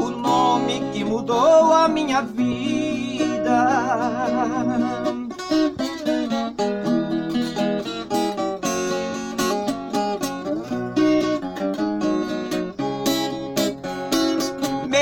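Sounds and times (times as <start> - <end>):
folk guitar plucking and strumming: 0.0 - 15.0.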